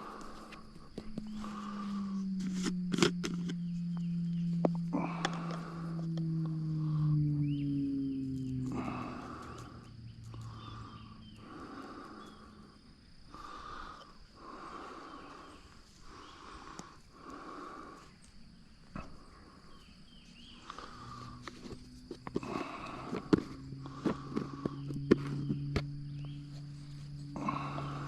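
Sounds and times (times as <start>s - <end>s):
man breathing heavily: 0.0s - 2.8s, 4.9s - 7.3s, 8.7s - 18.3s, 20.5s - 28.0s.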